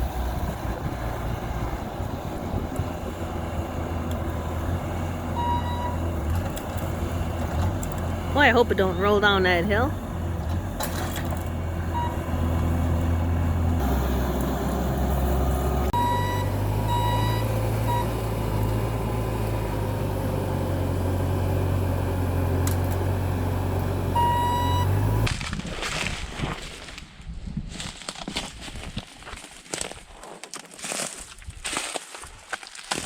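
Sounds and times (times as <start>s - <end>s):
vehicle engine running: 0.0s - 25.3s.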